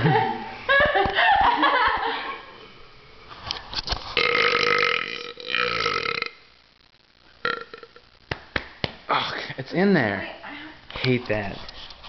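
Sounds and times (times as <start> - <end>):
loud burping: 4.2 - 6.5, 7.4 - 8.0.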